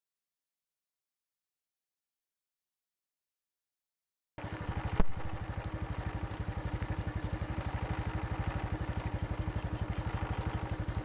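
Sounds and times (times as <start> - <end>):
small engine idling: 4.4 - 11.0.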